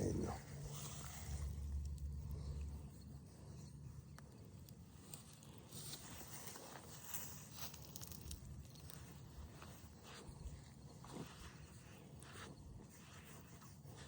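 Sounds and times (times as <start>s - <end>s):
rustling: 0.1s - 14.0s
faint footsteps: 5.0s - 14.0s.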